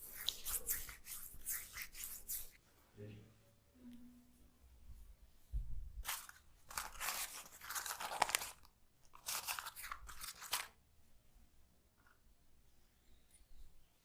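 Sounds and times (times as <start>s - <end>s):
hands rubbing oily hair: 0.0s - 2.6s.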